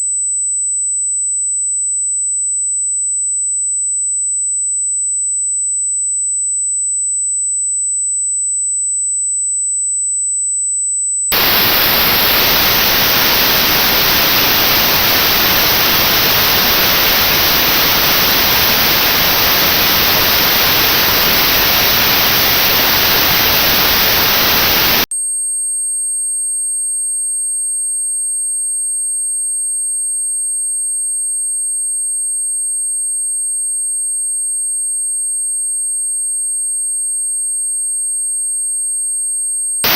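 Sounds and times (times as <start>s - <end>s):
notched white noise hiss: 11.4s - 25.1s.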